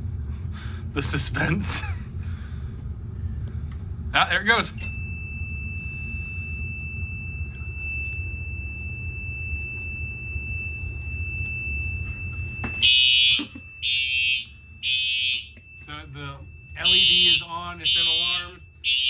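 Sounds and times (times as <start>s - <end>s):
alarm pulses: 4.2s - 19.0s
high-pitched alarm tone: 4.8s - 19.0s.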